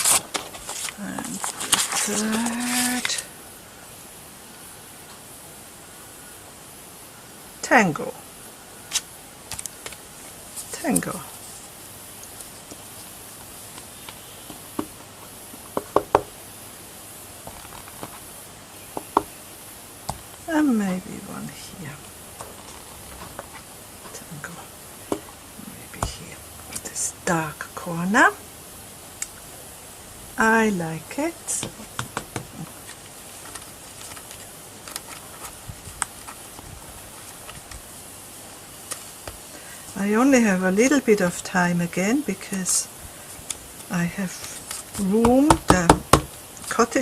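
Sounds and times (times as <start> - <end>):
clicks and taps handling papers: 0.0 - 3.2, 31.6 - 37.8, 38.8 - 39.4, 44.3 - 47.0
steady faint hiss: 0.0 - 47.0
rubber stamp knocking on paper: 15.7 - 16.3, 19.0 - 19.3, 31.6 - 32.6, 45.0 - 46.4.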